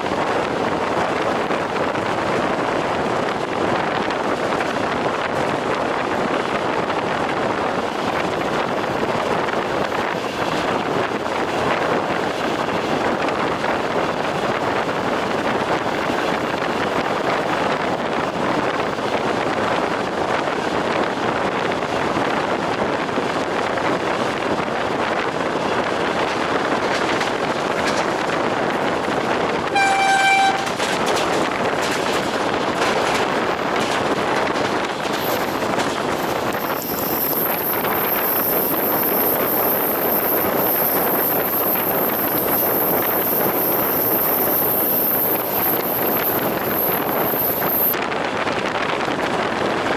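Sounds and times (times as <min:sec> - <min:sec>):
train wheels clattering over rails: 0:25.1 - 0:48.0
short high train horn toot: 0:29.7 - 0:31.2.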